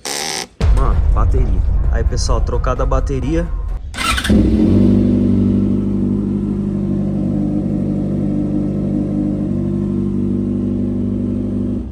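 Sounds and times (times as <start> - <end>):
motorcycle engine idling: 4.0 - 11.9.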